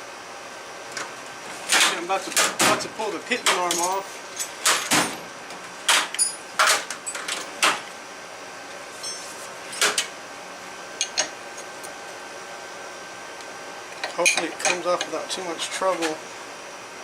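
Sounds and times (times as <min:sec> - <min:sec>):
metal tools clanking: 0:03.4 - 0:05.0, 0:09.0 - 0:09.9, 0:13.9 - 0:15.2.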